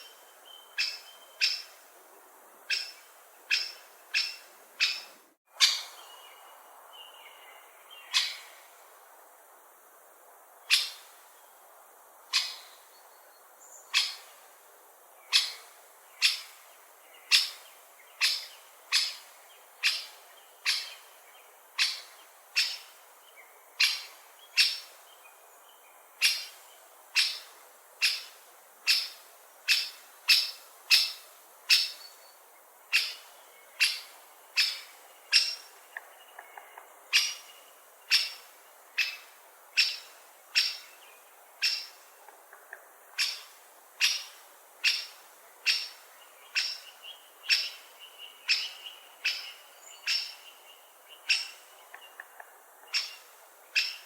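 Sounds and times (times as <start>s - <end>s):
woodpecker calling: 0.7s - 1.8s, 2.7s - 6.2s, 8.0s - 8.6s, 10.7s - 11.1s, 12.3s - 12.8s, 13.9s - 14.3s, 15.3s - 16.6s, 17.3s - 21.2s, 21.8s - 23.0s, 23.8s - 25.0s, 26.2s - 32.1s, 32.9s - 41.0s, 41.6s - 54.0s.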